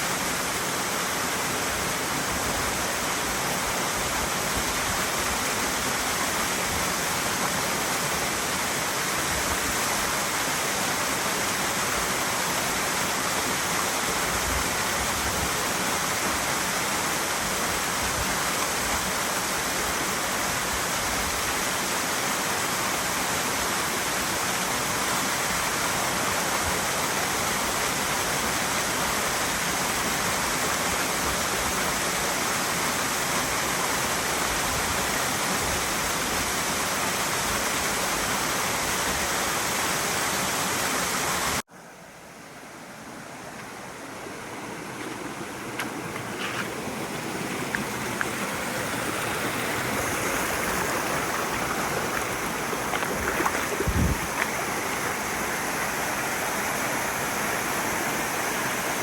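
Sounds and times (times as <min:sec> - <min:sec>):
stream rushing over rocks: 0:00.0 - 0:59.0.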